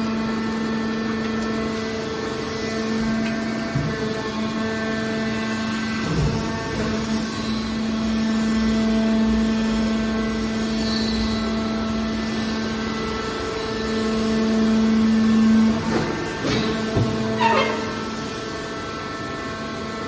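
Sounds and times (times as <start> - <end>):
hydraulic baler humming: 0.0 - 19.8
machine knocks: 15.7 - 18.2.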